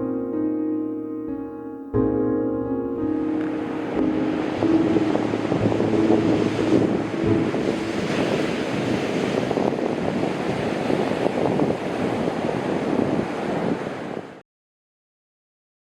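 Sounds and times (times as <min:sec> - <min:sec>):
ocean surf breaking: 0:02.8 - 0:14.4
wind buffeting microphone: 0:03.0 - 0:14.4.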